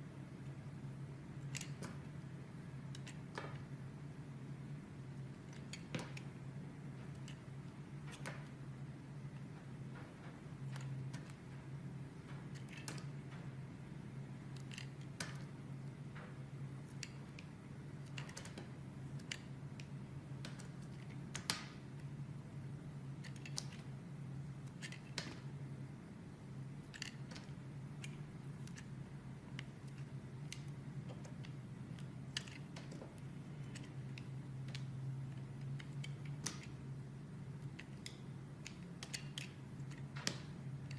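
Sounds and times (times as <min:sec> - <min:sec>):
steady low hum: 0:00.0 - 0:40.9
knife cutting soap crackles: 0:26.8 - 0:40.9.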